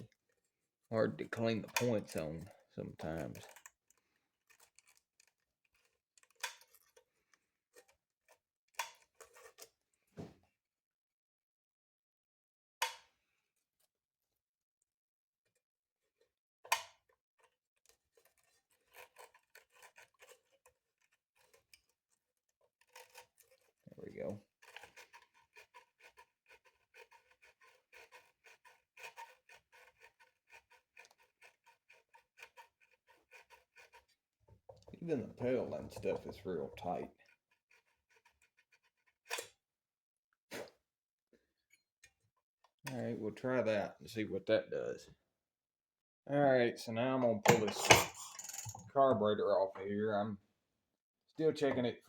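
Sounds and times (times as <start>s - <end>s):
small tools clicking and scraping: 0.0s - 9.8s, 16.2s - 39.6s, 47.4s - 49.0s
scraping on metal engine parts: 22.8s - 37.2s, 47.5s - 48.8s.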